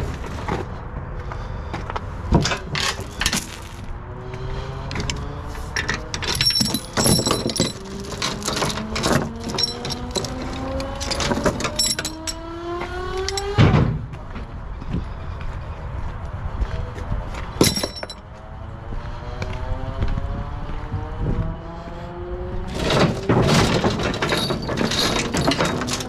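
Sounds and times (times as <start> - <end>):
clanks and knocks: 2.3 - 3.6, 4.9 - 14.5, 17.6 - 18.2, 22.7 - 26.0
machinery engine rising in pitch: 3.5 - 14.4, 18.3 - 23.9.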